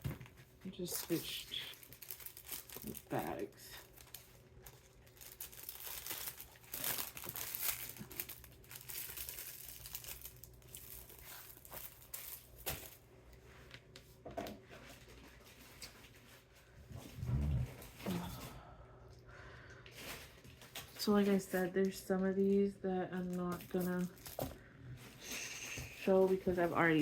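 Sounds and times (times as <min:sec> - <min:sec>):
plastic bags crinkling: 0:00.0 - 0:13.0, 0:19.8 - 0:27.0
plastic tearing: 0:00.8 - 0:13.0, 0:23.3 - 0:24.5.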